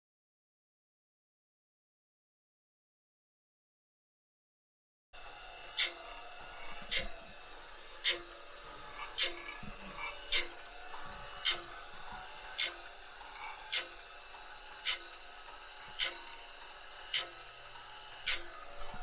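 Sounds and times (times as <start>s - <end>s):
steady machine hum: 5.2s - 19.0s
sharpener clicking: 14.8s - 15.1s, 18.2s - 19.0s.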